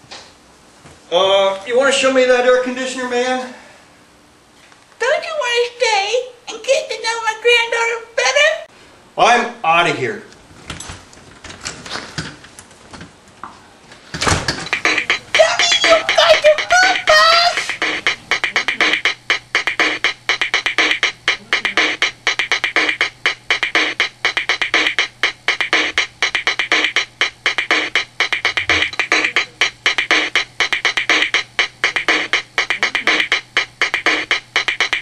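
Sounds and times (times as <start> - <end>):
fast drum machine beat: 14.5 - 35.0
electronic synthesizer music: 14.6 - 35.0.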